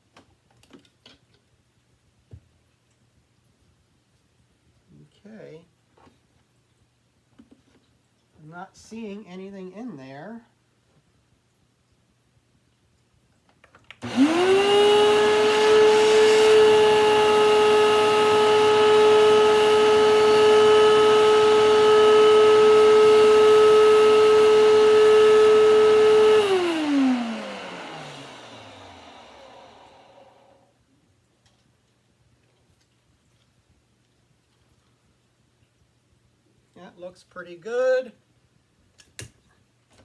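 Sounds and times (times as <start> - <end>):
vacuum cleaner motor whine: 14.0 - 30.7.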